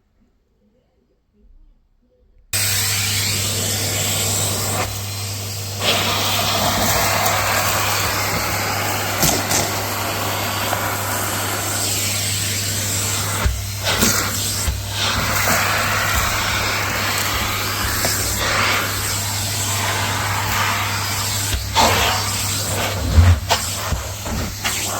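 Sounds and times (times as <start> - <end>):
vacuum cleaner humming: 2.6 - 24.9
vacuum nozzle clicks: 5.8 - 12.5, 13.1 - 20.7.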